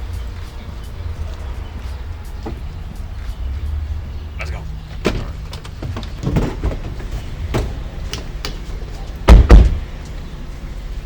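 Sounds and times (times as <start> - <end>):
car doors slamming: 2.3 - 2.9, 4.9 - 8.4, 9.2 - 10.0
car door clicks and knocks: 5.0 - 8.6, 9.3 - 9.8.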